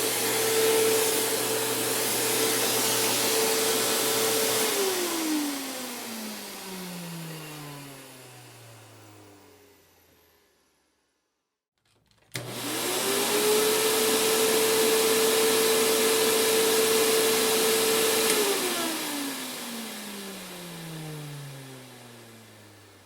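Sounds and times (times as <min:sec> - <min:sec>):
vacuum cleaner motor whine: 0:00.0 - 0:10.8, 0:12.3 - 0:23.0
vacuum cleaner switch click: 0:12.3 - 0:12.6.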